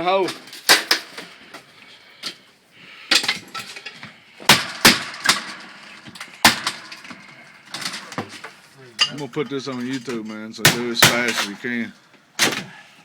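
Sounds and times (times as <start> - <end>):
sharp knocks and bangs: 4.4 - 8.6, 10.6 - 11.5.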